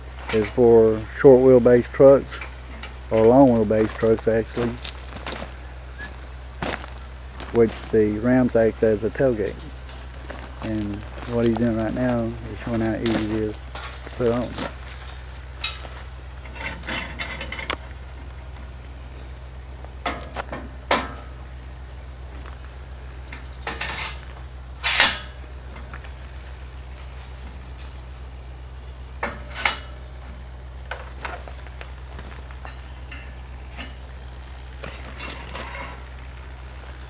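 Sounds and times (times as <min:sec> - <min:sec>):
steady low hum: 0:00.0 - 0:37.0
metal scrape: 0:13.1 - 0:17.8, 0:23.6 - 0:25.4, 0:29.2 - 0:30.0, 0:34.8 - 0:36.0
metallic clanks and knocks: 0:15.6 - 0:17.8, 0:20.0 - 0:21.3, 0:23.3 - 0:25.9, 0:29.2 - 0:30.0, 0:34.8 - 0:36.0.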